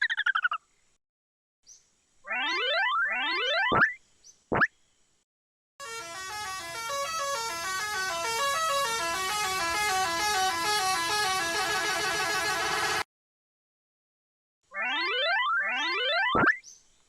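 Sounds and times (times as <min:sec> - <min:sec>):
chord horn tune: 0:05.8 - 0:13.0.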